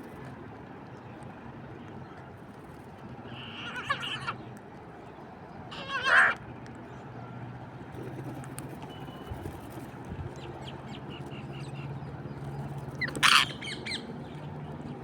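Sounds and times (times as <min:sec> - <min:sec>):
parrot squawk: 0:05.7 - 0:06.4, 0:13.0 - 0:14.0.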